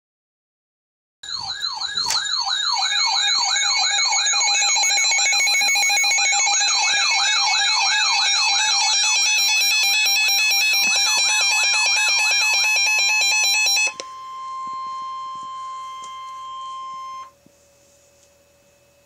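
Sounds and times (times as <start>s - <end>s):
sweeping siren-like tone: 1.3s - 17.4s
two-tone attention signal: 9.4s - 17.4s.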